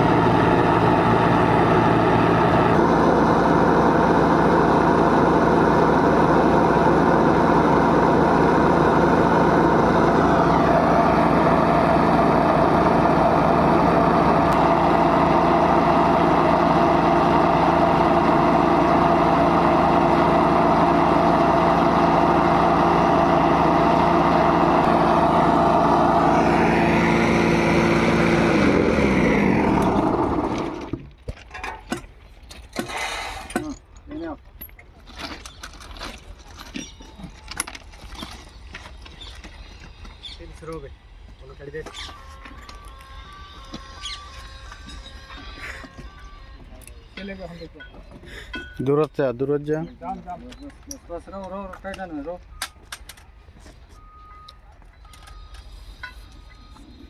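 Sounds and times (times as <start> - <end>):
engine-driven machine running: 0.0 - 32.0.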